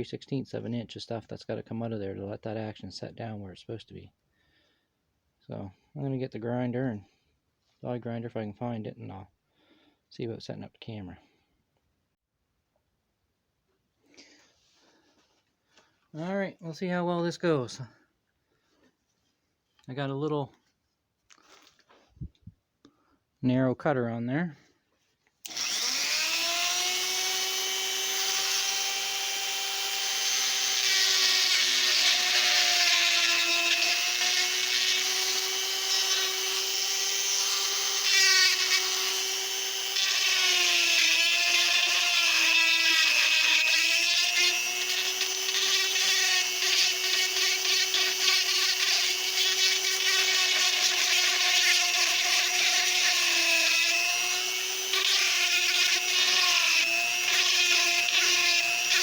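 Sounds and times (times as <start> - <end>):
die grinder whining: 25.4 - 59.0.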